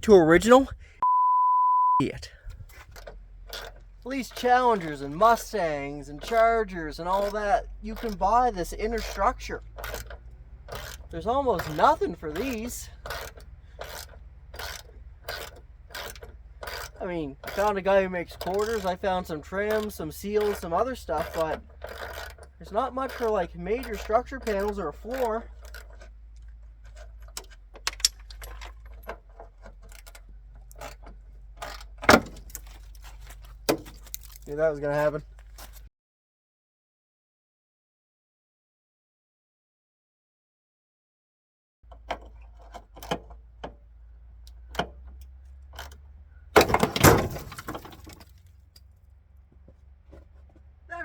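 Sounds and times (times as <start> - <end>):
metallic knocks and clanks: 2.6 - 34.5, 41.9 - 48.9
metal tools clinking: 2.7 - 35.9.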